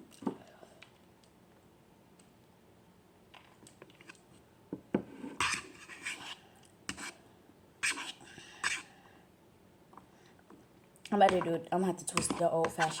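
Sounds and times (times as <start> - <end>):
rough scraping and rubbing: 7.8 - 8.8, 12.2 - 13.0.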